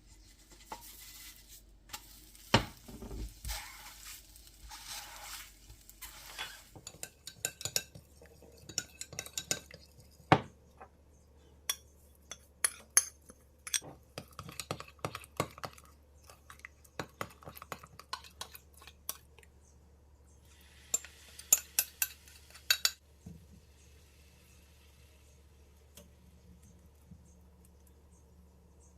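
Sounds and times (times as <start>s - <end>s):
utensils clinking against dishes: 6.3s - 10.2s, 20.9s - 23.0s.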